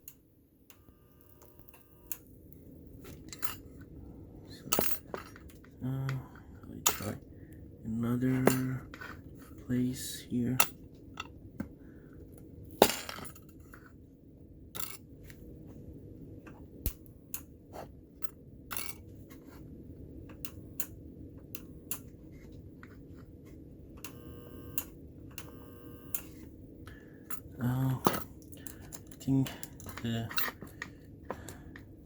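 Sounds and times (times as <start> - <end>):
electric buzz: 0.7 - 3.0, 24.0 - 26.5
sharp welding crack: 1.1 - 2.3.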